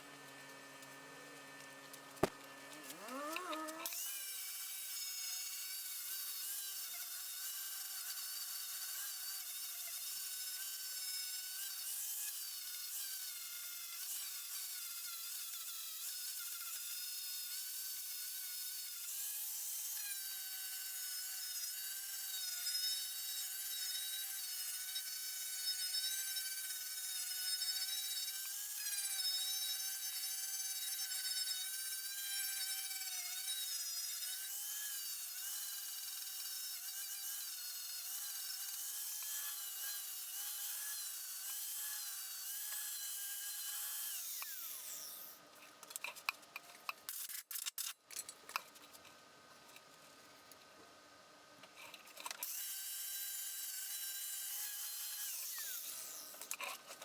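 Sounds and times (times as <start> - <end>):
power cutting tool whine: 0.1 - 16.7, 52.4 - 56.6.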